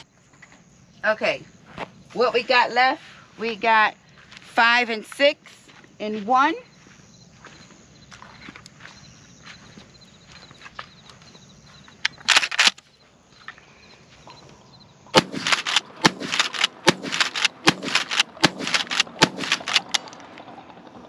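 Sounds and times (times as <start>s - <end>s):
shotgun pump action: 12.2s - 12.8s, 15.2s - 20.2s
shotgun shots: 15.1s - 20.2s
brief rattle: 15.2s - 20.5s.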